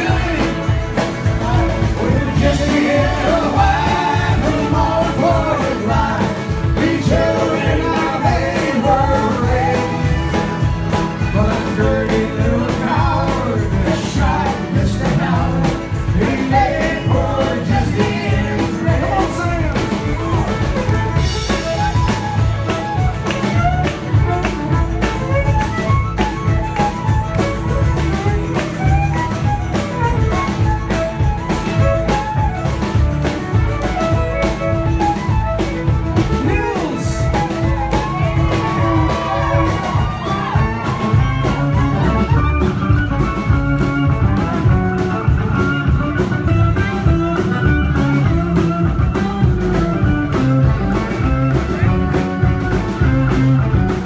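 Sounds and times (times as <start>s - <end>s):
person singing: 0.0s - 20.6s, 36.2s - 42.6s
folk-rock band playing: 0.0s - 54.0s.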